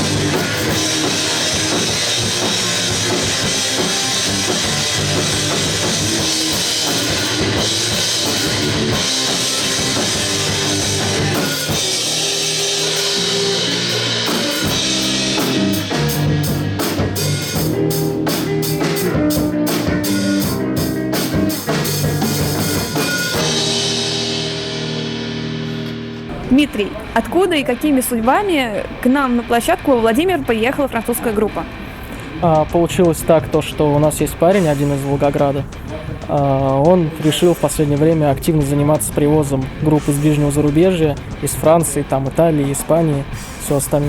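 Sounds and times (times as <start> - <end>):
cymbal crashes: 0.0 - 26.4
rock band playing: 0.0 - 44.0.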